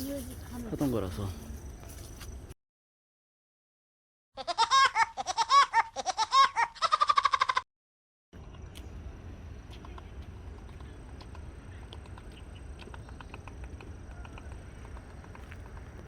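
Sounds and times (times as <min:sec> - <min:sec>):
cartoon laugh sound effect: 0:04.4 - 0:07.6.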